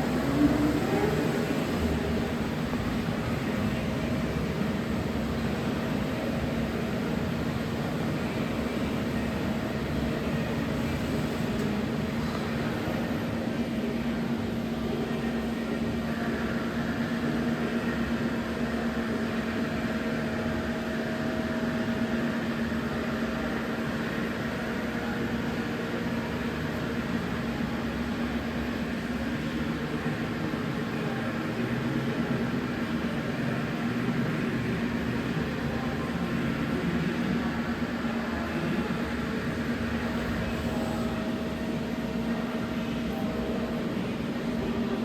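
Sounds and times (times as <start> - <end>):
lathe machine hum: 0.0 - 14.7, 33.9 - 45.0.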